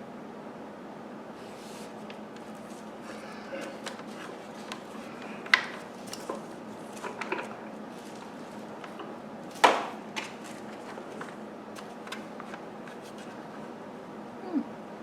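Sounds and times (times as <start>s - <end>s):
plastic parts knocking: 3.6s - 12.6s.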